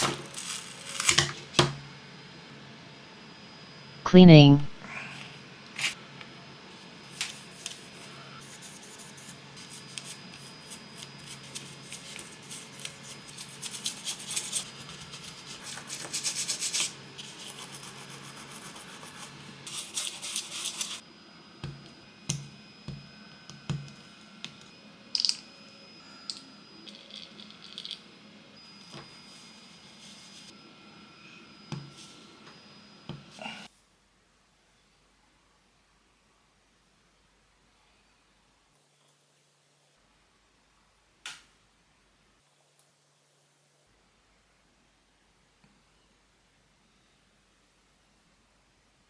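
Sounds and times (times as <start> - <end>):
scratchy scrubbing strokes: 7.3 - 21.0.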